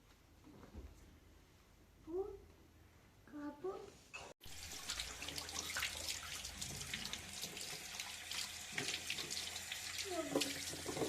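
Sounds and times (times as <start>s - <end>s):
water running and splashing: 4.4s - 11.0s.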